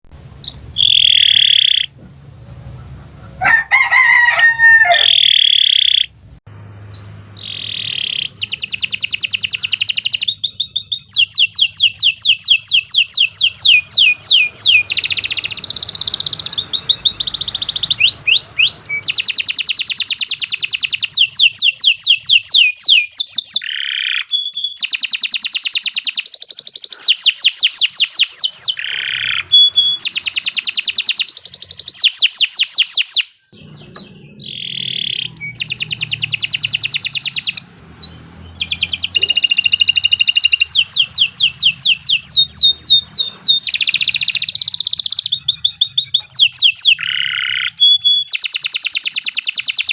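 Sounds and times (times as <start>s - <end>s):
canary singing: 0.3s - 49.9s
lower wavering bird call: 0.5s - 2.0s, 2.8s - 6.1s, 38.6s - 48.3s.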